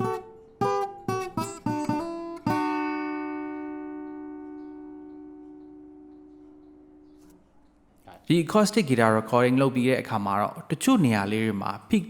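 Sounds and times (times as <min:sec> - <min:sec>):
acoustic guitar strummed chords: 0:00.0 - 0:07.3.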